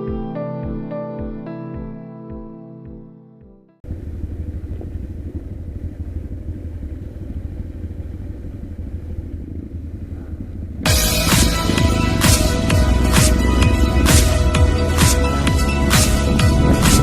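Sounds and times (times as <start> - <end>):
motorcycle engine rumble: 3.8 - 17.0.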